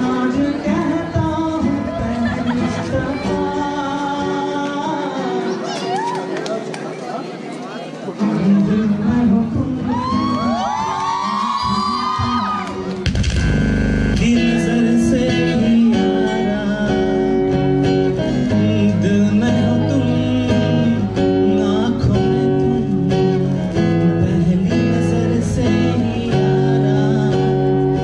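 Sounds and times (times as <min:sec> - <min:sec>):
acoustic guitar strumming: 0:00.0 - 0:05.6, 0:11.5 - 0:28.0.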